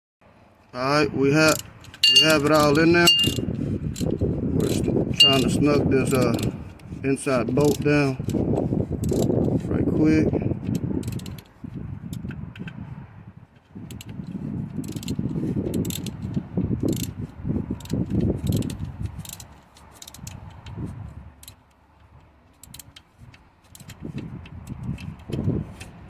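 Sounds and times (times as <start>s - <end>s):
ratchet wrench clicking: 1.5s - 6.5s, 9.0s - 9.4s, 10.6s - 12.8s, 13.9s - 14.2s, 14.8s - 20.7s, 21.4s - 21.7s, 22.6s - 23.1s
metal clinks: 1.8s - 3.5s, 5.1s - 6.4s.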